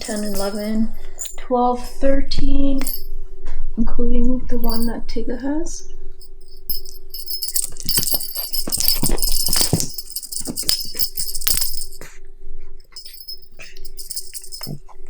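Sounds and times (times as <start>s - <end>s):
small bells jingling: 0.0s - 2.2s, 2.8s - 3.1s, 4.6s - 5.0s, 6.2s - 12.1s, 12.9s - 14.8s.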